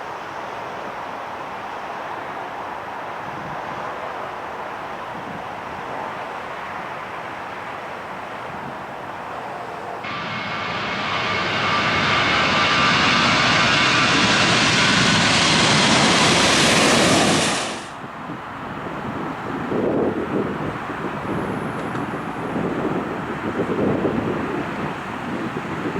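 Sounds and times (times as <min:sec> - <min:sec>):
jet engines whining: 0:10.0 - 0:18.0.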